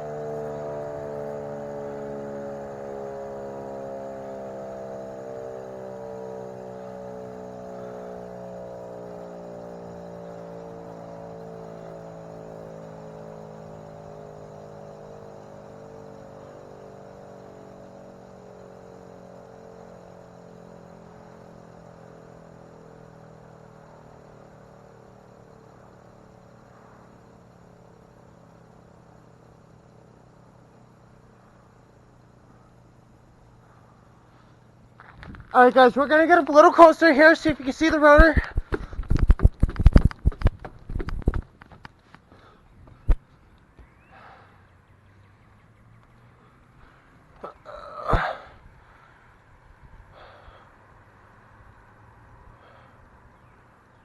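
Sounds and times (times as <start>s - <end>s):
mechanical siren winding down: 0.0s - 31.0s.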